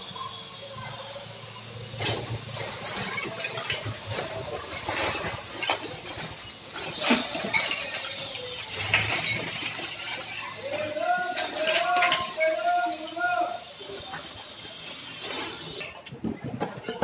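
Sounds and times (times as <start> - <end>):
brick and concrete breaking: 2.0 - 13.3
rubble falling: 2.0 - 13.6.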